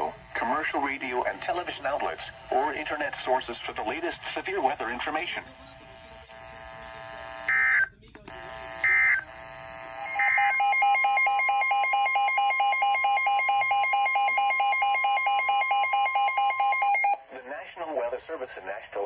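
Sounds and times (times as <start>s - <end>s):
continuous alarm tone: 0.0s - 17.2s
digital data tone bursts: 10.0s - 17.2s
rapidly pulsing beep: 10.0s - 17.2s.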